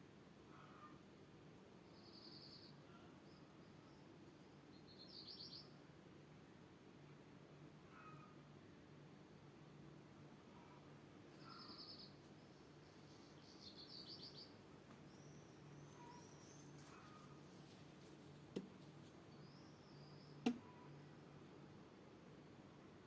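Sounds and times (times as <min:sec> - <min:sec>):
songbird trills and chirps: 0:01.8 - 0:05.8, 0:10.6 - 0:17.6, 0:19.2 - 0:21.1
sharp clicks: 0:20.4 - 0:20.7.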